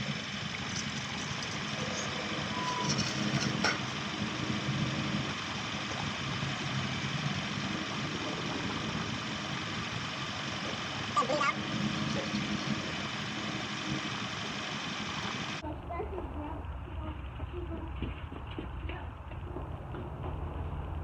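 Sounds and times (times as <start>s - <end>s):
vehicle engine idling: 0.0s - 21.0s
short high beep: 2.5s - 3.0s.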